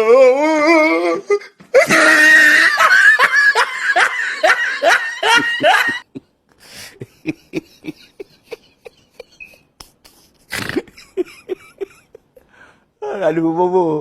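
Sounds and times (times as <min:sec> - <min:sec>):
person laughing hard: 0:01.7 - 0:12.6.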